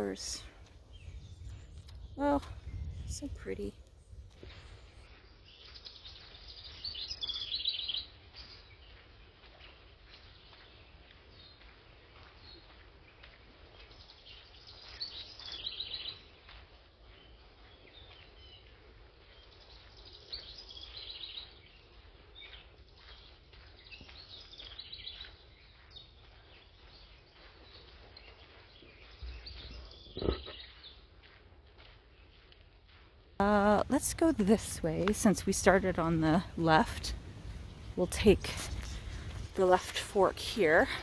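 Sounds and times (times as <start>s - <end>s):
songbirds chirping and singing: 33.4s - 40.9s.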